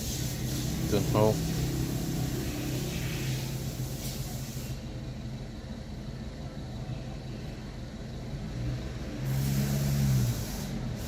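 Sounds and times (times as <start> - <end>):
car engine idling: 0.0 - 8.6.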